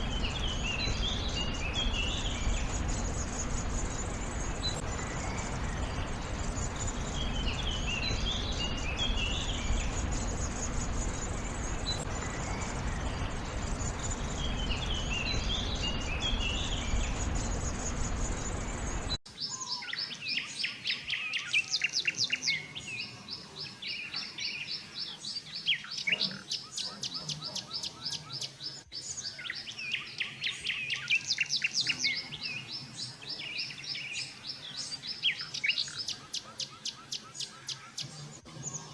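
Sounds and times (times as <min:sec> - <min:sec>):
steady rushing noise: 0:00.0 - 0:19.2
songbirds chirping and trilling: 0:00.0 - 0:38.9.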